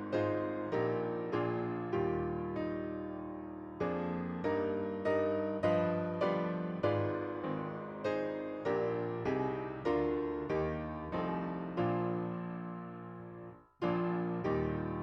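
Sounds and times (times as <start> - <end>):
slow piano chords: 0.0 - 15.0.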